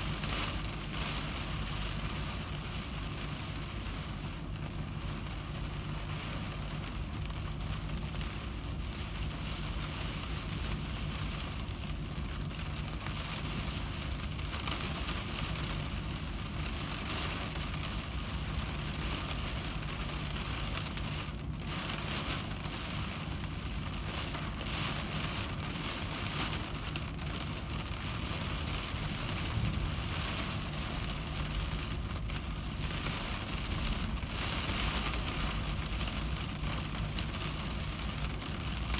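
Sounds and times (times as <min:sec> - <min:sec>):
heavy rain on a windshield: 0:00.0 - 0:38.9
steady low hum: 0:23.5 - 0:38.9.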